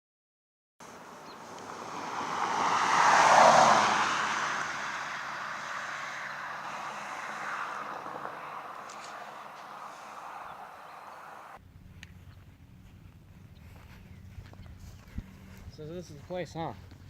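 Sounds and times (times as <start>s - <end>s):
car driving past: 0.8s - 11.6s.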